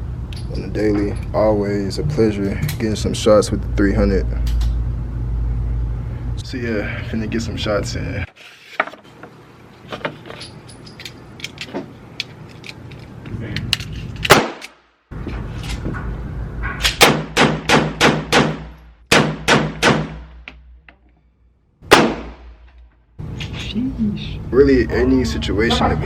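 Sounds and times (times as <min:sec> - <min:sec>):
rifle gunshots: 0:14.3 - 0:14.7, 0:21.9 - 0:22.5.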